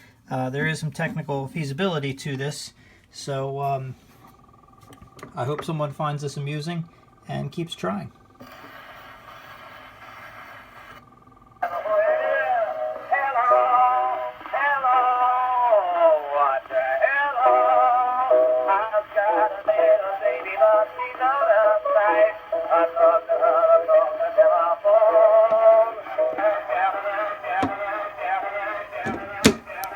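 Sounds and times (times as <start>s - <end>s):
man singing with accompaniment: 11.6s - 29.9s.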